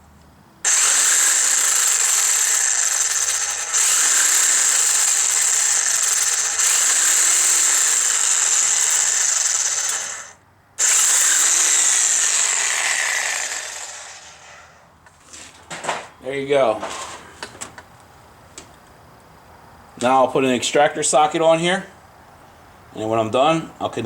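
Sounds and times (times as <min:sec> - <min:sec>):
reciprocating saw cutting metal: 0:00.6 - 0:14.9.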